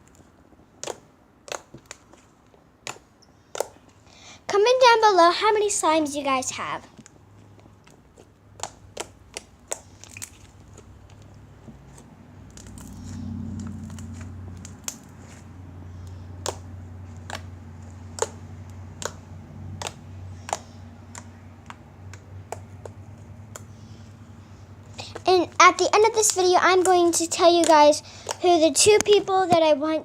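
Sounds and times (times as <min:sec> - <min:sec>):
slime squished by hand: 0:00.6 - 0:03.9, 0:08.1 - 0:23.9
faint low hum: 0:02.1 - 0:30.0.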